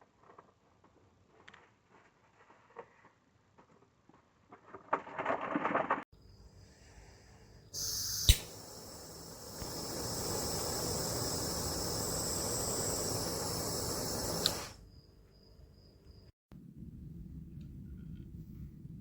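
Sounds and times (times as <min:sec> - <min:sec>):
torch flame hissing: 0:07.8 - 0:14.8
torch igniter click: 0:07.8 - 0:14.8.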